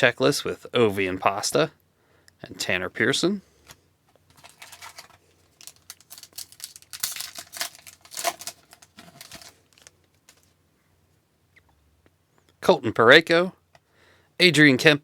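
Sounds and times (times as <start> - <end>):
foil wrapper crinkling and tearing: 4.3 - 10.5.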